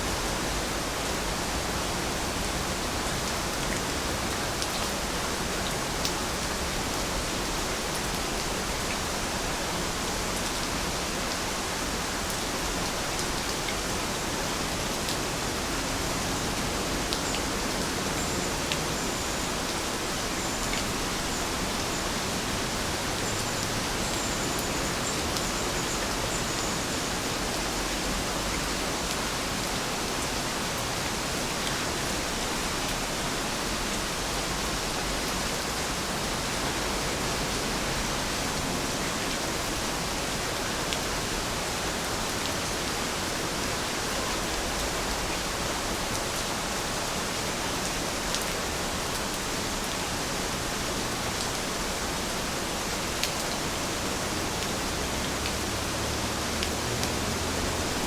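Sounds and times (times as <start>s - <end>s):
heavy rain falling: 0.0s - 58.0s
faint raindrop ticks: 5.6s - 6.5s, 48.3s - 49.4s, 56.5s - 57.2s.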